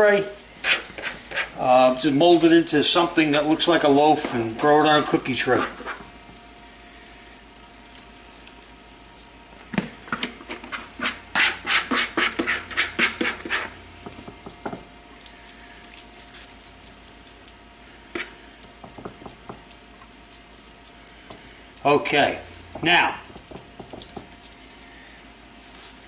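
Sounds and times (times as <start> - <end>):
hands patting meat: 18.2 - 22.0, 22.6 - 24.9.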